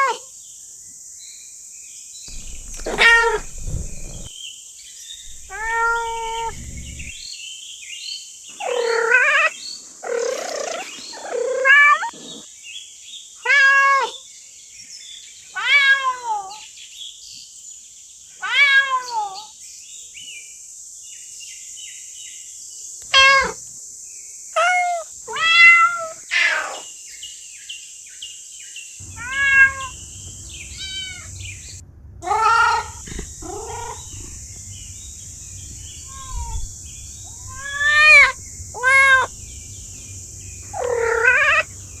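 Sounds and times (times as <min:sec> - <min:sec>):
cats meowing: 0:02.3 - 0:04.3, 0:05.3 - 0:07.2, 0:29.0 - 0:42.0
low hum: 0:02.3 - 0:04.3, 0:05.2 - 0:07.2, 0:29.0 - 0:42.0
steady high hiss: 0:02.3 - 0:04.3, 0:05.2 - 0:07.2, 0:29.0 - 0:42.0.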